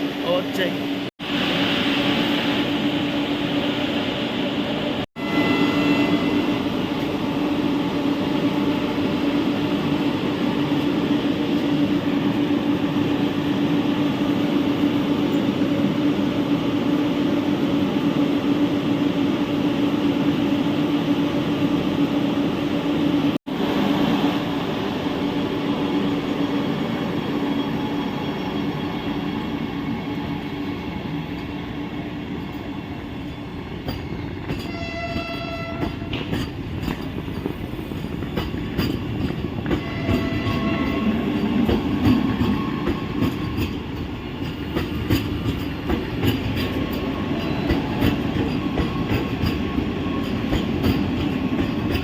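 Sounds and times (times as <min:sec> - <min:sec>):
electric train rail noise: 0:00.0 - 0:52.0
train horn blast: 0:05.2 - 0:06.7, 0:34.6 - 0:36.1, 0:39.7 - 0:41.3.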